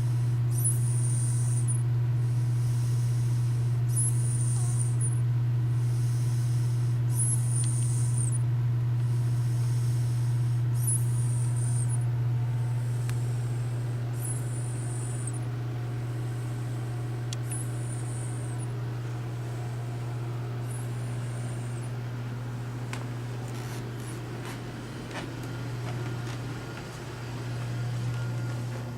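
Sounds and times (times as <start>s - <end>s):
steady low hum: 0.0s - 28.9s
person snoring with whistle: 0.5s - 8.5s, 9.3s - 12.1s, 12.8s - 15.5s, 17.4s - 18.7s.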